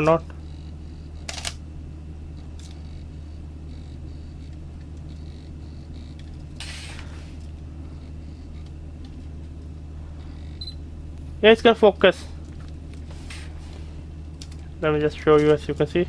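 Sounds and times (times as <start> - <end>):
autofocus motor whine: 0.0 - 16.0
steady low hum: 0.0 - 16.0
camera click: 1.3 - 1.6.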